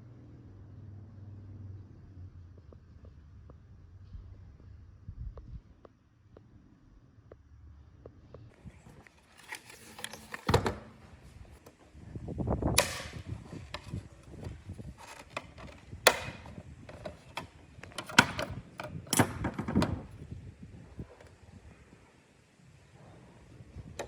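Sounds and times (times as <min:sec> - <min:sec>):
plastic parts clicking and scraping: 0:08.6 - 0:11.8, 0:12.8 - 0:20.3.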